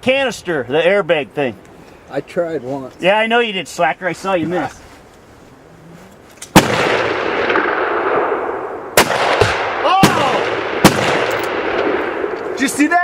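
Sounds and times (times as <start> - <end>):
gunshots with rolling echo: 6.5 - 13.0.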